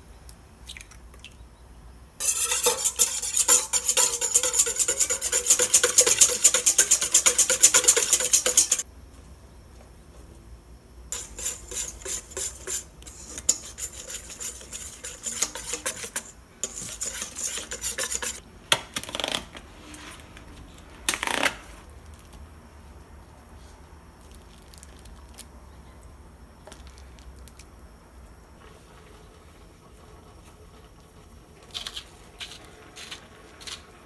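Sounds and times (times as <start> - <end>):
utensil scraping a bowl: 2.2 - 8.9, 11.1 - 18.4.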